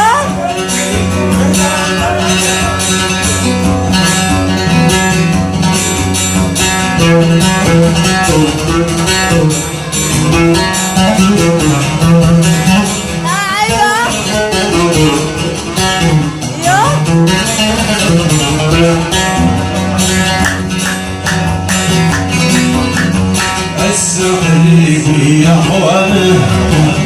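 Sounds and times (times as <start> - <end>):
plucked-string melody: 0.0 - 25.3
steady percussion beat: 20.4 - 23.5.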